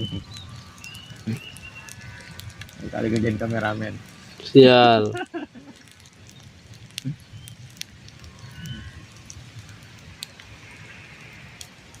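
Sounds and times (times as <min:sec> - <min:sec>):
campfire crackling: 0:00.0 - 0:12.0
sharp pops of fire: 0:00.0 - 0:12.0.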